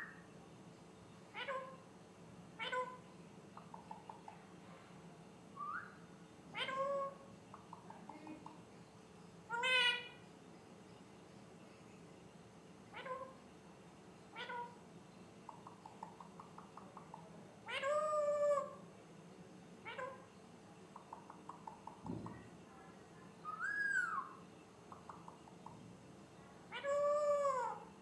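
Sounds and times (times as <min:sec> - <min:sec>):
parrot chirping: 0:01.3 - 0:01.8, 0:02.6 - 0:03.0, 0:03.6 - 0:04.4, 0:05.6 - 0:08.5, 0:09.5 - 0:10.3, 0:12.9 - 0:13.4, 0:14.3 - 0:14.8, 0:15.4 - 0:18.8, 0:19.8 - 0:20.3, 0:20.9 - 0:22.1, 0:23.4 - 0:25.9, 0:26.7 - 0:28.0
parrot meow-like call: 0:01.3 - 0:01.8, 0:02.6 - 0:03.0, 0:06.5 - 0:07.2, 0:12.9 - 0:13.4, 0:14.3 - 0:14.8, 0:17.6 - 0:18.8, 0:23.4 - 0:24.4, 0:26.7 - 0:27.9
parrot whistle: 0:05.6 - 0:06.0, 0:23.4 - 0:24.4
parrot rapid clicking: 0:21.0 - 0:22.0.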